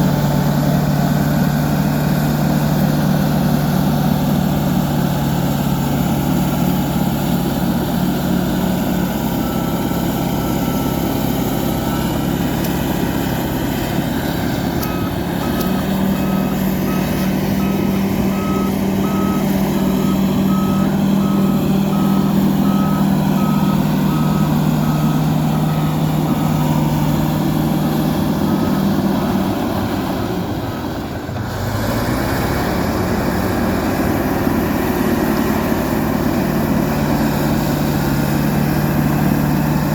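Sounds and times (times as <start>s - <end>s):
bulldozer diesel engine running: 0.0s - 39.9s
reversing alarm beeping: 8.6s - 30.5s.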